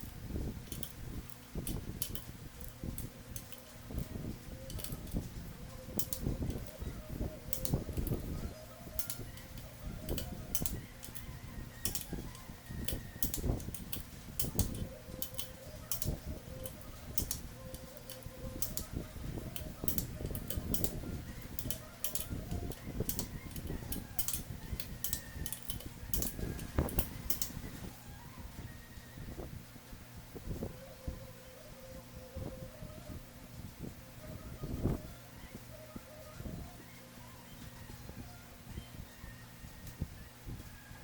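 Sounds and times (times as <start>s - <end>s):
metal engine parts clicking: 0.0s - 27.6s
steady low hum: 0.0s - 41.0s.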